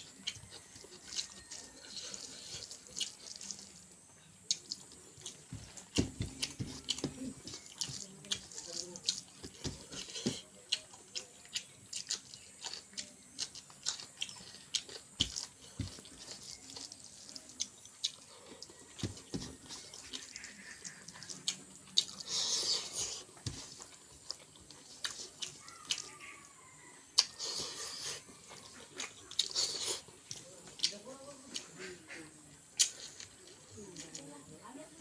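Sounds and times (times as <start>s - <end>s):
person chewing food: 0.0s - 34.8s
wet mouth clicks and smacks: 32.8s - 33.4s.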